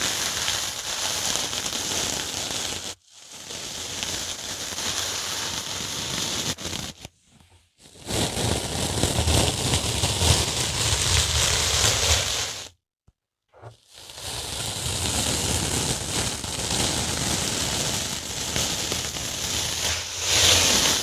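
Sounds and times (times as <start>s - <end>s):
dry sponge crackling: 16.2s - 21.0s.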